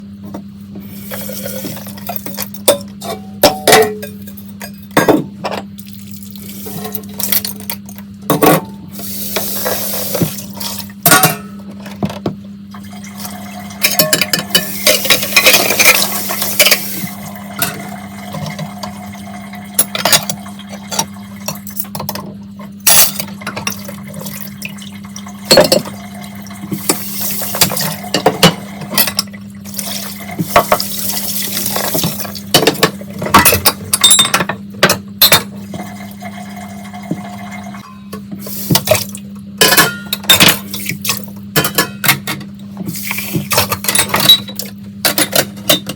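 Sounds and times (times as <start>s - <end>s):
dishes clinking: 2.2s - 5.7s.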